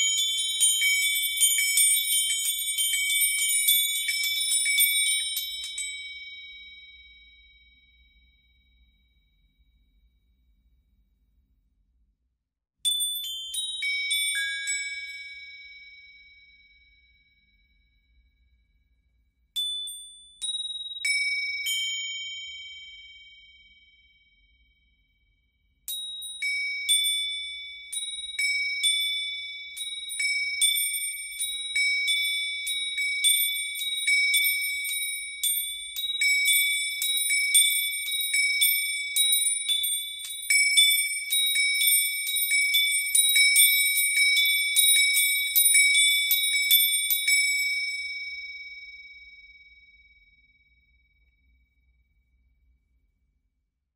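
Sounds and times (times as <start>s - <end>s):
metal chimes ringing: 0.0s - 7.6s, 12.9s - 17.0s, 26.2s - 49.6s.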